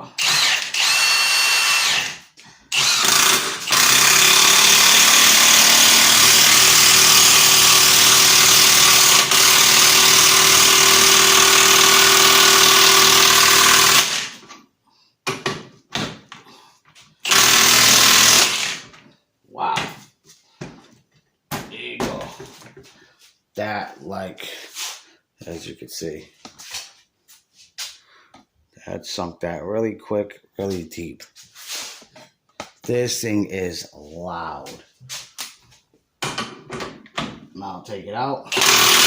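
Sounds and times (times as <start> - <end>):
impact wrench hammering: 38.5 - 39.0.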